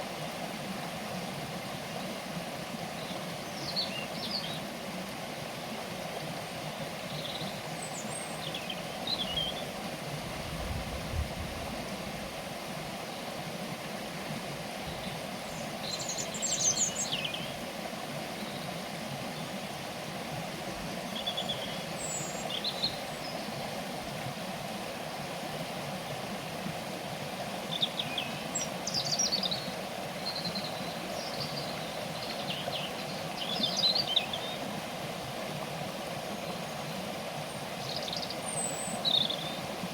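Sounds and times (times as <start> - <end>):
small birds chirping: 14.9 - 17.6, 21.0 - 23.6, 27.7 - 34.6, 37.5 - 39.7.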